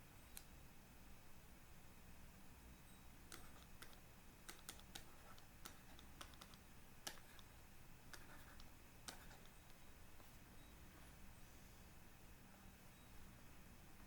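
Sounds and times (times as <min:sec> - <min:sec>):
faint irregular clicks and taps: 0:00.3 - 0:00.5, 0:03.3 - 0:07.5, 0:08.1 - 0:10.3.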